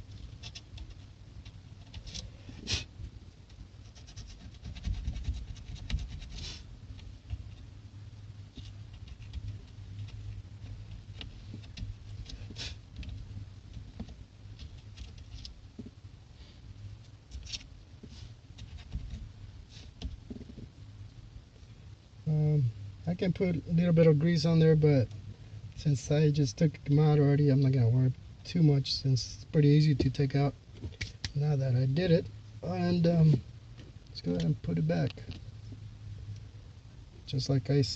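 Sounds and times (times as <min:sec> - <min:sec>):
scraping and rubbing: 0:03.8 - 0:07.7.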